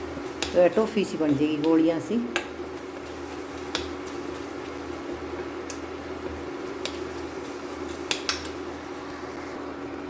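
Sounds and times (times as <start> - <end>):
syrup hissing on gas burner: 0.0 - 10.0
spoon clicking against pan: 3.7 - 4.0, 8.1 - 8.6.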